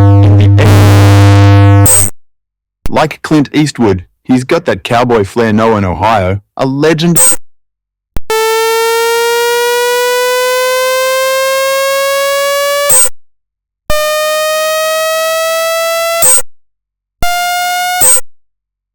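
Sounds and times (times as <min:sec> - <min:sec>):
synthesizer tone rising like siren: 0:08.3 - 0:13.1, 0:13.9 - 0:16.4, 0:17.3 - 0:18.2.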